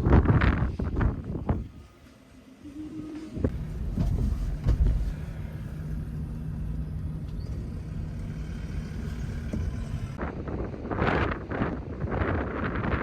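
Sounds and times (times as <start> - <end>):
wind noise rushing: 0.0 - 1.8, 10.2 - 13.0
vehicle engine hum: 0.0 - 13.0.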